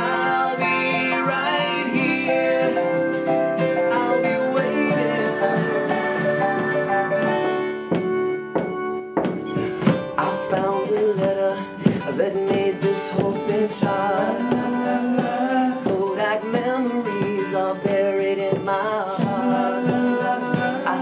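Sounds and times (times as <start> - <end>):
rock band playing live: 0.0 - 14.8
melodic lead line: 0.0 - 16.4
strummed acoustic guitar: 0.0 - 21.0.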